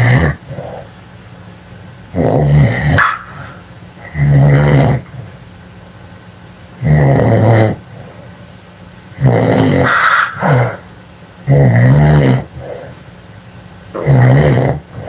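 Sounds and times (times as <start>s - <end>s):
loud snoring: 0.0s - 0.9s, 2.1s - 5.3s, 6.8s - 8.3s, 9.2s - 10.8s, 11.4s - 13.0s, 14.0s - 15.0s.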